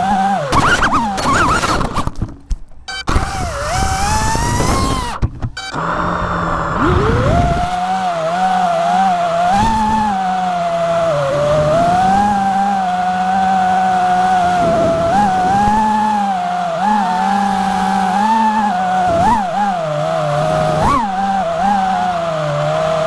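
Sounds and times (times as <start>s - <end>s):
quadcopter motors whining: 0.0s - 2.2s, 2.9s - 23.0s.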